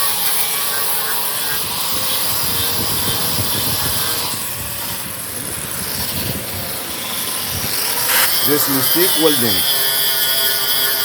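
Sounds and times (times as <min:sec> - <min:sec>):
grinder grinding metal: 0:03.2 - 0:11.0.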